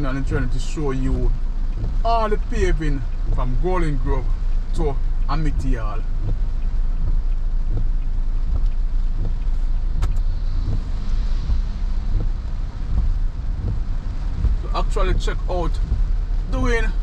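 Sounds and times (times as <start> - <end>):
car engine and tyre rumble: 0.0 - 17.0
sharp click: 7.8 - 10.3.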